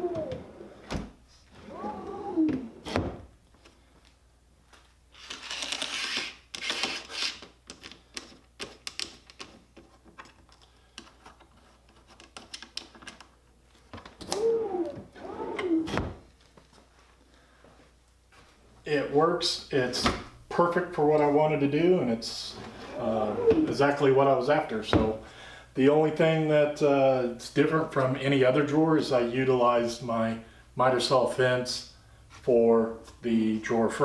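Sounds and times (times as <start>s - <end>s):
drawer sliding: 0.0s - 3.3s, 14.2s - 16.2s, 22.5s - 24.0s.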